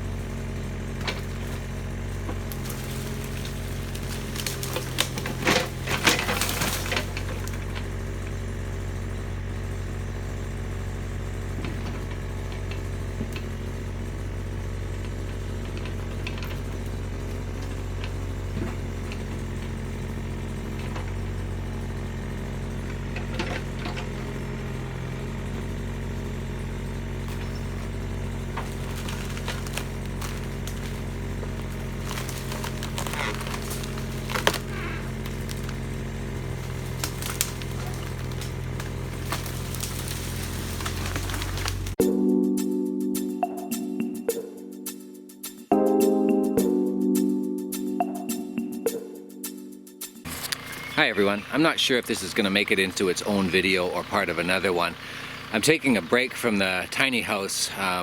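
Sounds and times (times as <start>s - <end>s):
diesel engine running: 0.0s - 44.9s, 50.2s - 58.0s
wood cracking and splintering: 0.1s - 8.6s, 11.7s - 42.0s.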